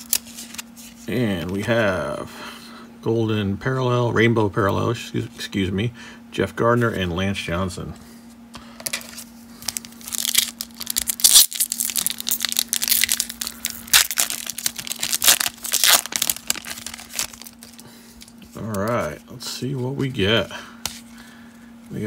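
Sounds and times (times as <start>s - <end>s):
wrapper tearing and crinkling: 0.0s - 0.6s, 8.9s - 17.9s
faint steady hum: 0.0s - 22.0s.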